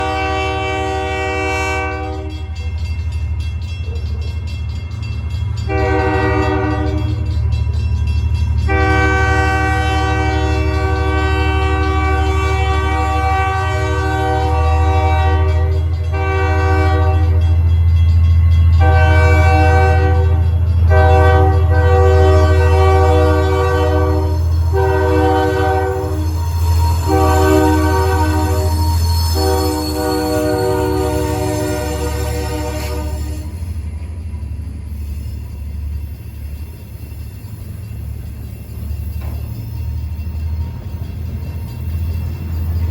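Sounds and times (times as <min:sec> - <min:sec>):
train air horn blasts: 0:00.0 - 0:02.6, 0:05.7 - 0:07.3, 0:08.6 - 0:17.6, 0:18.8 - 0:33.6
locomotive engine rumble: 0:00.0 - 0:42.9.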